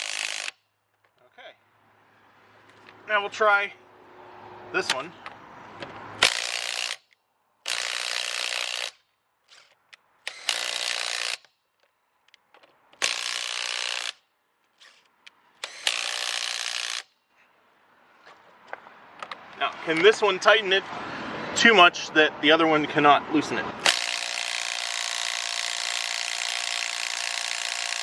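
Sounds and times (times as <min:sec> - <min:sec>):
impact driver hammering lug nuts: 0:06.2 - 0:07.0, 0:07.7 - 0:09.0, 0:09.6 - 0:11.5, 0:12.5 - 0:14.2, 0:15.6 - 0:17.0, 0:23.8 - 0:28.0.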